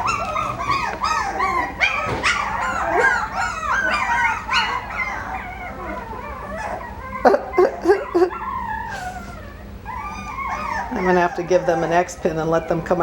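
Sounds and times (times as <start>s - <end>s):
puppies yipping and whining: 0.0s - 13.0s.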